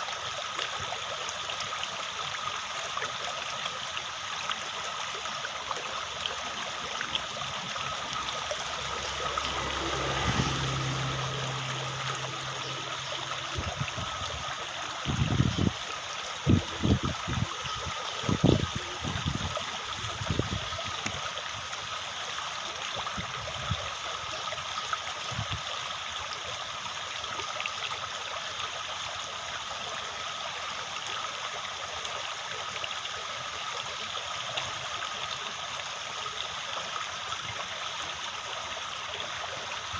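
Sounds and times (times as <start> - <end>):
running water: 0.0 - 39.9
low hum: 7.5 - 14.5.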